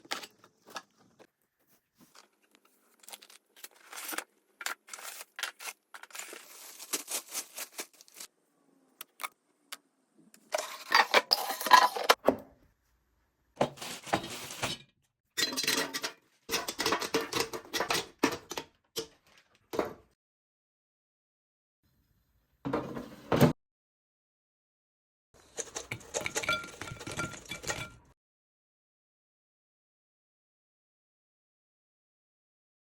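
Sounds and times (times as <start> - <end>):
packaging rustling and tearing: 2.1 - 8.3.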